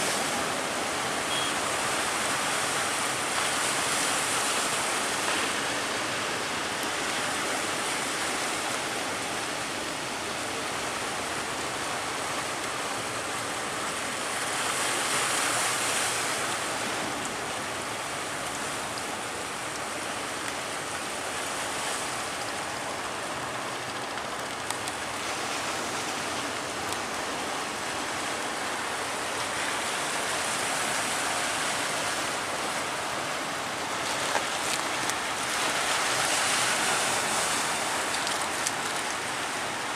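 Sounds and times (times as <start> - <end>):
ocean surf breaking: 0.0 - 39.9.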